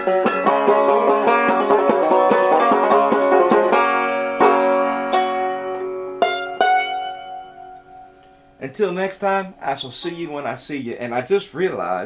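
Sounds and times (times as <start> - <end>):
banjo playing: 0.0 - 8.3.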